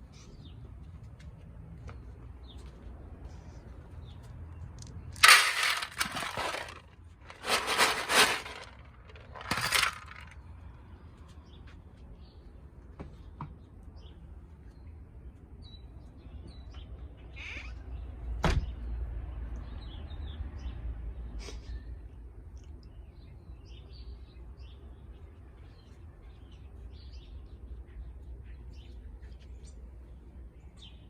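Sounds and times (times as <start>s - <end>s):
dry cat food rattling in cup: 5.2s - 10.4s.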